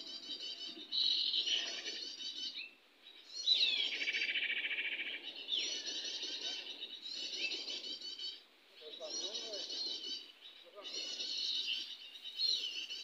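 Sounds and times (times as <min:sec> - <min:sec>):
songbird chattering: 0:03.4 - 0:13.0.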